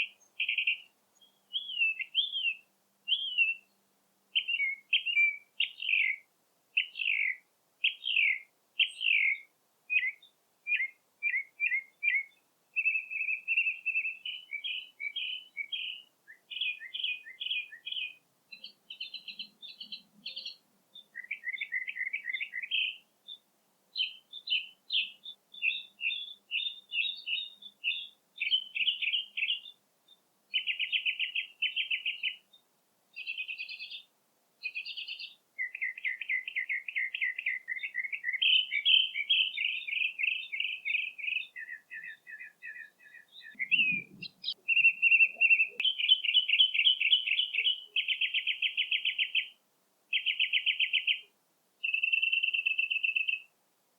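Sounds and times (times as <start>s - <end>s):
birds chirping and trilling: 15.5s - 23.0s, 33.2s - 49.6s.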